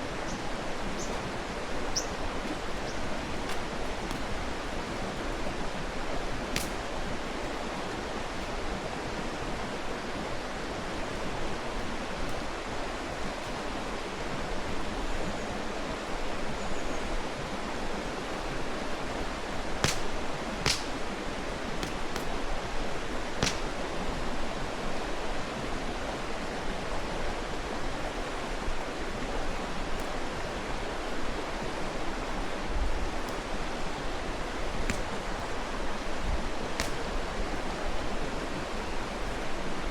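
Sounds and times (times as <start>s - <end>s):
mountain stream rushing: 0.0s - 39.9s
campfire wood popping: 1.0s - 5.4s, 6.4s - 7.2s, 19.8s - 22.6s, 23.2s - 24.0s, 33.1s - 33.8s, 34.6s - 37.5s.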